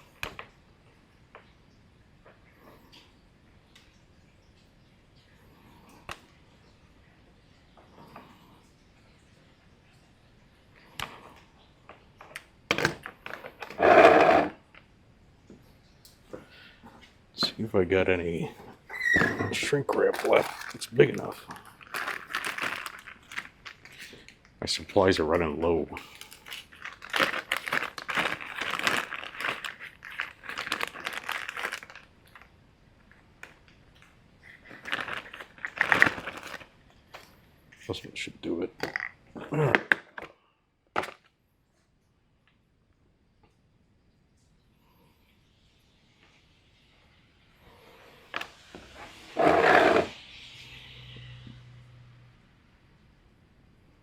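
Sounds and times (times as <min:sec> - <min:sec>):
plastic packaging rustling: 0:19.5 - 0:24.5, 0:26.0 - 0:32.5, 0:34.5 - 0:36.8
small parts rattling clatter: 0:20.0 - 0:24.3, 0:26.0 - 0:32.1, 0:34.6 - 0:36.7.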